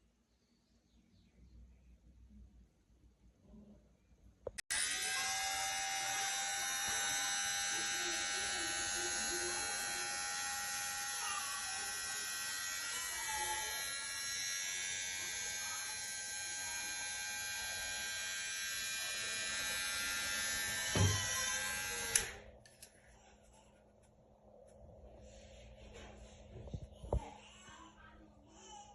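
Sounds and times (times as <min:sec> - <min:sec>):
hair clipper buzzing: 0:04.6 - 0:22.4.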